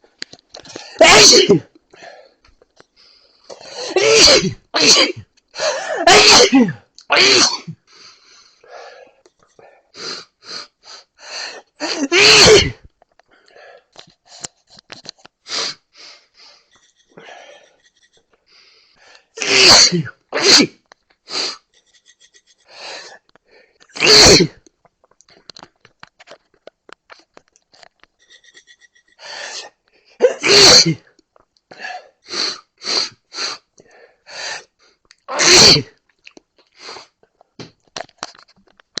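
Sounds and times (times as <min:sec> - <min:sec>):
person sneezing: 0:00.7 - 0:01.7, 0:03.5 - 0:07.8, 0:11.8 - 0:12.9, 0:19.4 - 0:21.6, 0:24.0 - 0:24.6, 0:29.4 - 0:31.1, 0:35.3 - 0:35.9.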